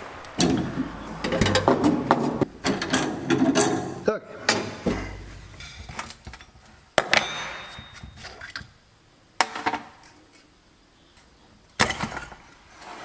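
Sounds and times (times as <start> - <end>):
metal tools clinking: 5.5 - 8.6.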